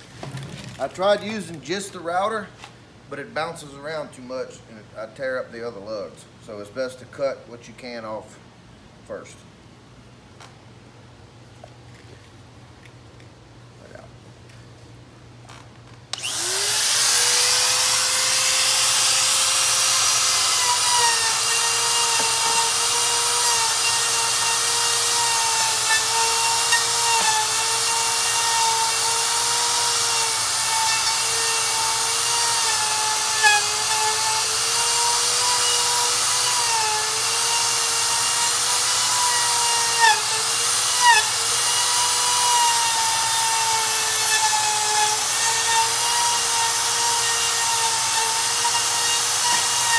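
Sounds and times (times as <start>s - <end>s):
power tool motor whining: 16.1s - 49.9s.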